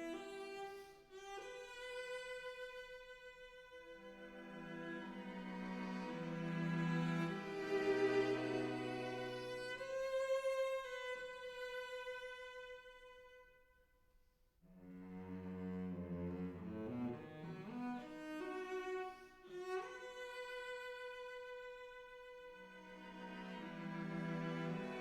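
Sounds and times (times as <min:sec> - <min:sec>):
slow bowed strings music: 0:00.0 - 0:13.6, 0:14.7 - 0:25.0.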